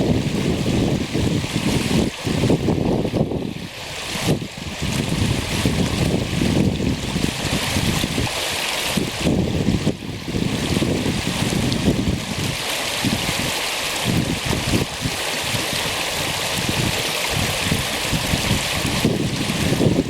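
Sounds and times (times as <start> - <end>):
creek water rushing: 0.0 - 20.0
wind buffeting microphone: 0.0 - 20.0.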